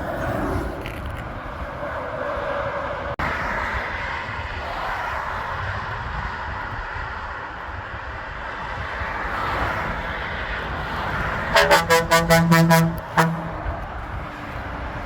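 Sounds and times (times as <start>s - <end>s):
truck engine and tyre noise: 0.0s - 15.0s
truck horn short blasts: 11.5s - 13.8s.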